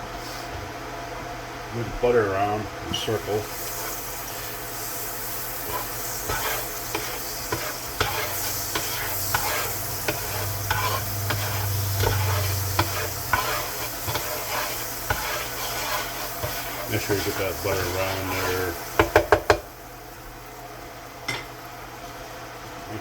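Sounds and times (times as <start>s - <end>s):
butter sizzling in a pan: 2.9s - 23.0s
spatula scraping and tapping pan: 5.6s - 19.7s.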